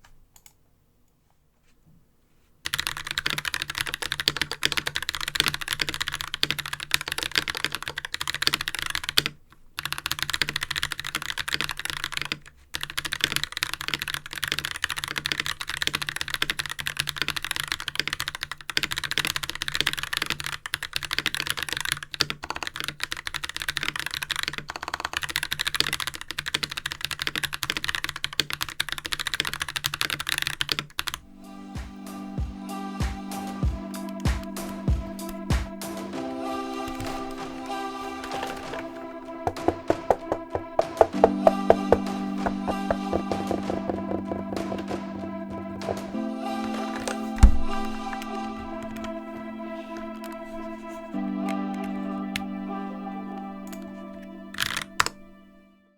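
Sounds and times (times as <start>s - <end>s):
fast mechanical keyboard typing: 2.7s - 31.2s, 39.5s - 46.2s.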